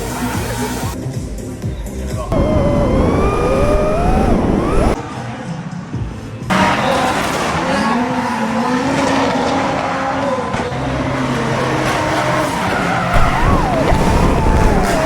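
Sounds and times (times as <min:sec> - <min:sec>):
car engines revving: 0:02.3 - 0:05.0, 0:06.5 - 0:15.0.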